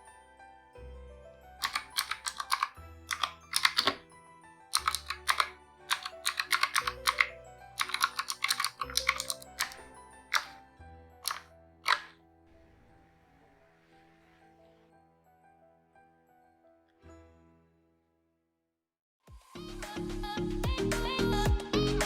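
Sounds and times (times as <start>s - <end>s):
soft background music: 0.0s - 17.9s
mechanical keyboard key clicks: 1.6s - 4.0s, 4.8s - 10.5s, 11.2s - 12.1s.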